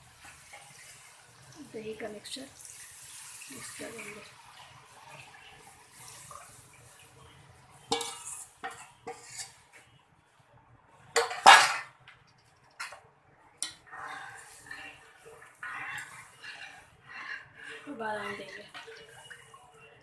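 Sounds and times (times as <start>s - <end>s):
metal spoon scraping a cooking pot: 7.8s - 9.7s, 13.6s - 19.7s.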